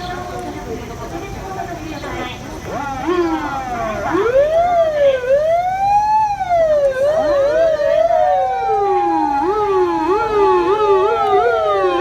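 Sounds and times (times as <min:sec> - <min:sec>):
emergency vehicle sirens wailing: 0:00.0 - 0:12.0
siren holding steady note: 0:02.7 - 0:12.0
fast up-and-down siren: 0:03.0 - 0:12.0.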